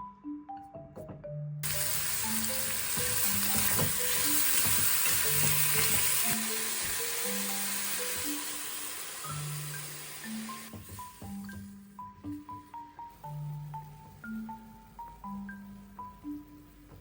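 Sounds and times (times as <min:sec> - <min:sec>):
light mallet tune: 0:00.0 - 0:08.5
food sizzling in a frying pan: 0:01.6 - 0:11.5.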